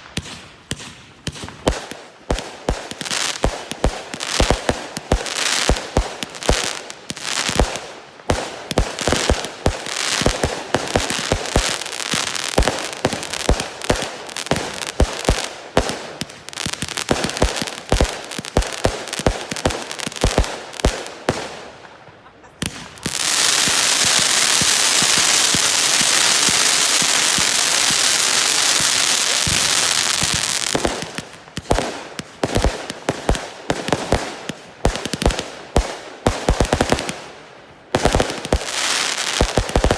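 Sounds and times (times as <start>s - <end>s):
fireworks shots and bursts: 0.0s - 39.9s
fireworks hissing: 22.7s - 31.2s.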